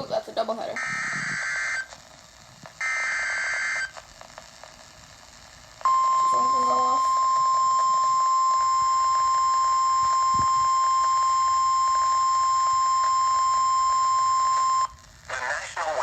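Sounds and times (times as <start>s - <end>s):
steady loud high alarm tone: 0.8s - 1.9s, 2.8s - 3.9s, 5.9s - 14.9s.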